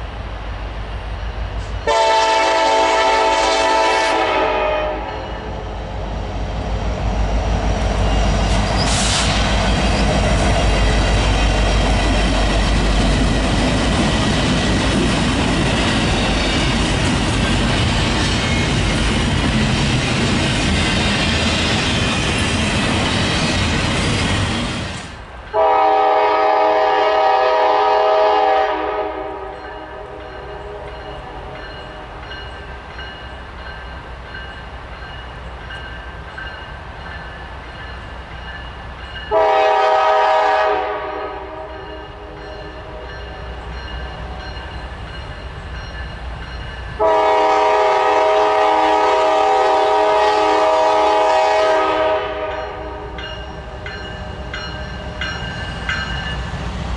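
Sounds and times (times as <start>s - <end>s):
passing train rumble: 0.0s - 56.9s
locomotive air horn blasts: 1.8s - 5.5s, 25.6s - 31.5s, 39.3s - 43.1s, 47.0s - 53.2s.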